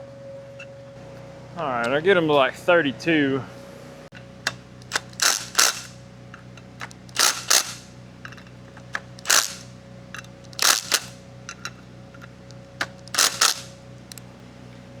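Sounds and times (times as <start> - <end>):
torque wrench clicking: 4.1 - 14.2.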